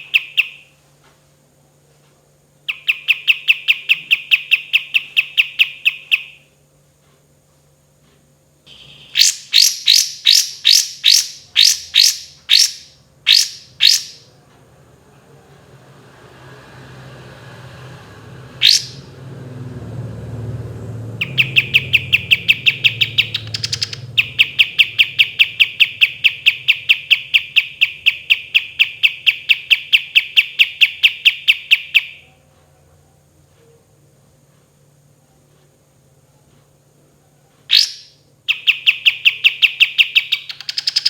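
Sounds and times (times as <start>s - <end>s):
bulbul singing: 0.0s - 0.7s, 2.7s - 6.5s, 8.7s - 14.3s, 18.6s - 19.1s, 21.1s - 32.4s, 37.7s - 41.0s.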